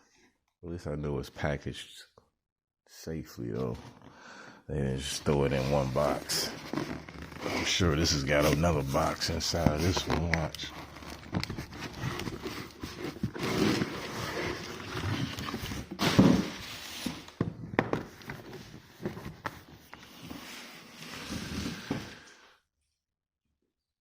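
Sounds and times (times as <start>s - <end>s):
cardboard scraping and rustling: 5.3s - 22.3s
cardboard knocks and thumps: 17.4s - 19.6s.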